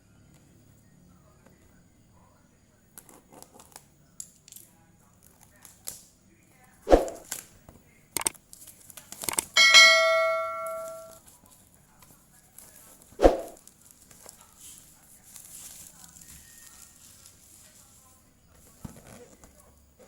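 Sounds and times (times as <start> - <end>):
bell-like metallic ring: 9.6 - 11.2.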